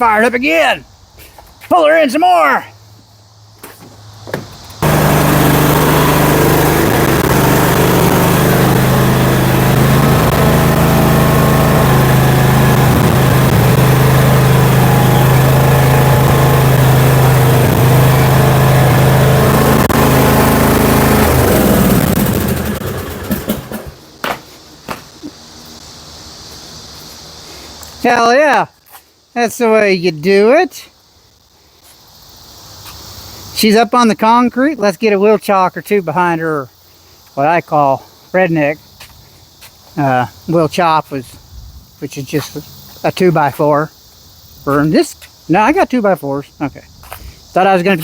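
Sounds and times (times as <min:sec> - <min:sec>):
lawn mower engine running: 0:04.1 - 0:26.3.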